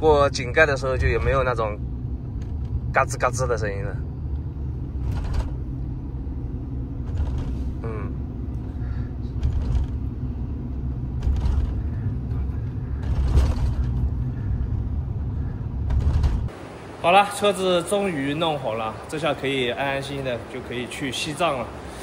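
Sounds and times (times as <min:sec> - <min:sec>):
road and tyre rumble: 0:00.0 - 0:22.0
car driving over bumps: 0:00.6 - 0:16.6.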